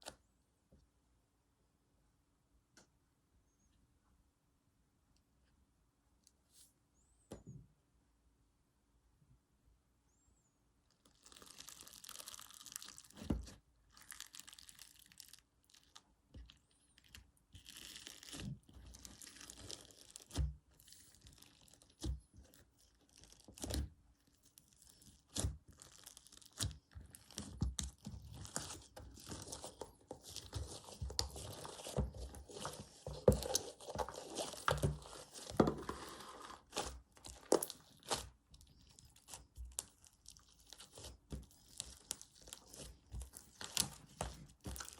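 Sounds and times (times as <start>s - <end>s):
slime crackling and tearing: 11.0s - 44.9s.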